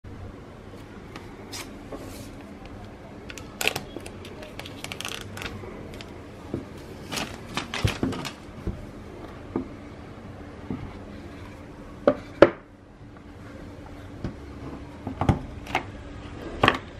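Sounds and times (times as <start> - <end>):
packaging rustling: 3.3 - 6.2, 6.8 - 8.5.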